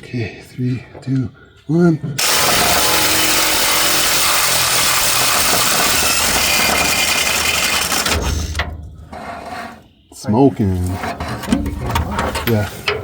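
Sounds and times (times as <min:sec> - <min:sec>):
power drill running: 0:02.2 - 0:08.6.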